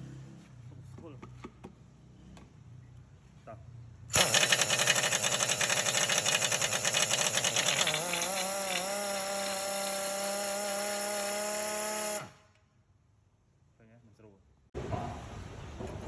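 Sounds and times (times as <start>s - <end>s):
power steering pump whining: 4.1s - 12.4s.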